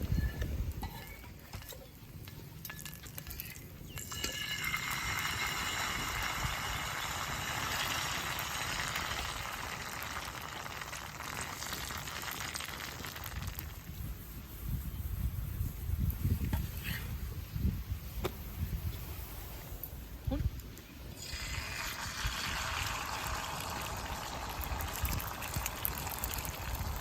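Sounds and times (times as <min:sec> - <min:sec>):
food frying in oil: 0:00.2 - 0:14.1, 0:21.1 - 0:27.0.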